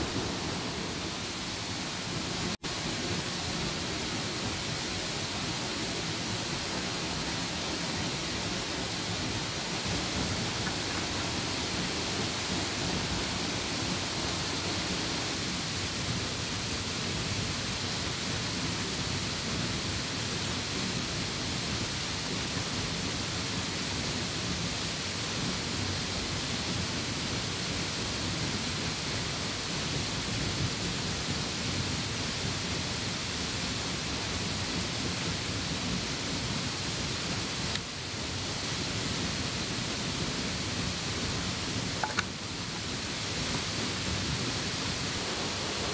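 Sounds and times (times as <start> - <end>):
waterfall rushing: 0.0 - 21.0, 33.5 - 45.9.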